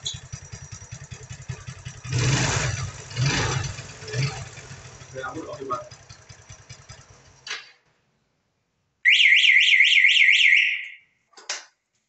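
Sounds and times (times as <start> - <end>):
motorcycle engine idling: 0.0 - 7.5
electronic alarm warbling siren: 9.1 - 11.0.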